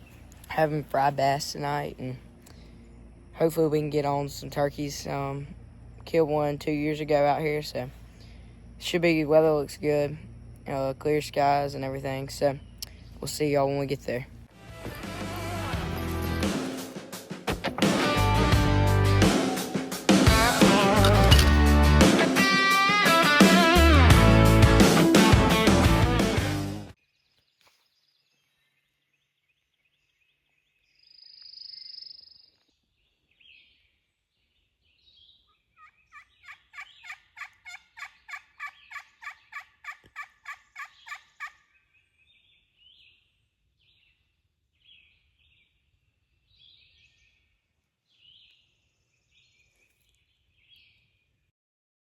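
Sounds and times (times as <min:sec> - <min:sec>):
turkey yelps: 0:35.8 - 0:41.7.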